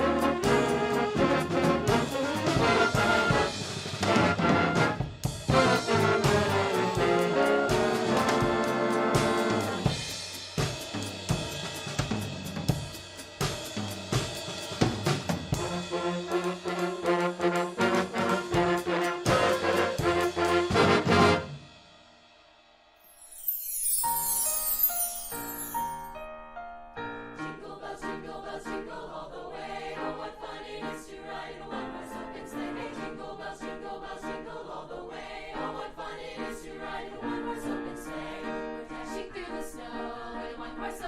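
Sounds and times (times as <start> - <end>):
brass band music: 0.0 - 10.1, 15.5 - 21.7.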